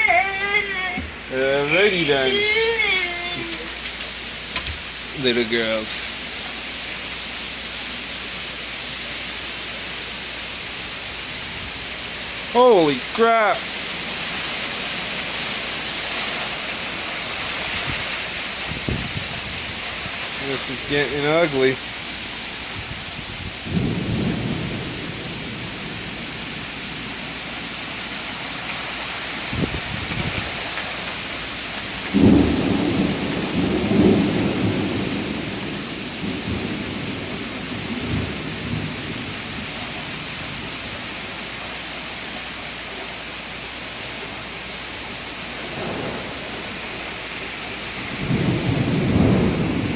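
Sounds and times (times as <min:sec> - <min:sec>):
steady rain: 0:00.0 - 0:49.9
thunder rumbling: 0:16.2 - 0:27.7, 0:31.8 - 0:40.7, 0:45.5 - 0:49.9.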